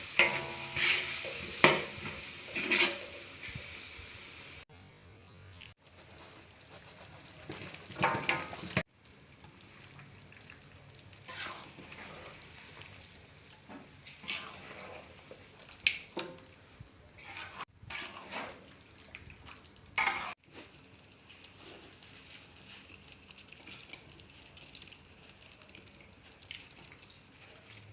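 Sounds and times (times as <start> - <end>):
metal ladle scraping a pan: 0.0 - 3.7, 11.2 - 12.8, 13.7 - 15.4, 17.2 - 18.7, 20.0 - 20.4
chicken frying in a wok: 0.0 - 4.7, 6.1 - 27.9.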